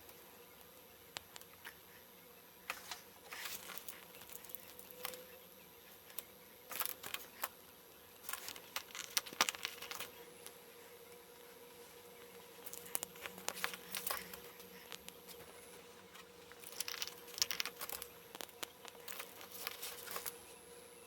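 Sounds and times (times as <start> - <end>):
faint steady hum: 0.0 - 21.0
plastic pieces clicking together: 3.4 - 5.2, 6.1 - 7.6, 8.2 - 10.2, 12.6 - 15.2, 16.5 - 20.4.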